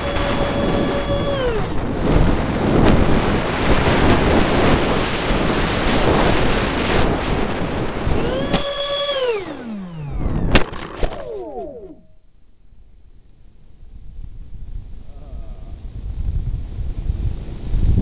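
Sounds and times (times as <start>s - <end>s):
electric fan motors whining down: 0.0s - 12.2s
wind noise on microphone: 0.0s - 12.2s, 13.1s - 18.0s
sharp clicks: 8.2s - 12.1s.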